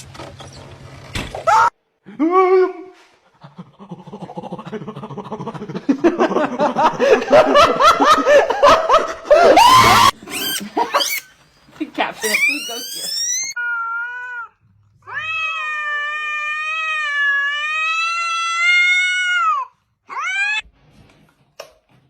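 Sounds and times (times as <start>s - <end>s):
person laughing: 3.6s - 11.3s, 12.2s - 13.5s
short vocal cry: 9.4s - 11.3s.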